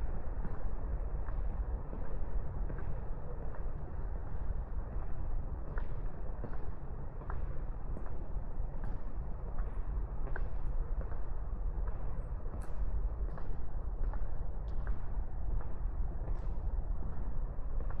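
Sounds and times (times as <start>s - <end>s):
low outdoor rumble: 0.0s - 18.0s.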